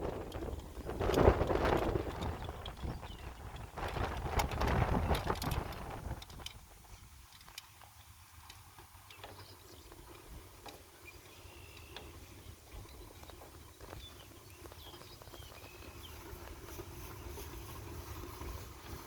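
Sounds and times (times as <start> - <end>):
wind rumble on microphone: 0.0 - 7.2.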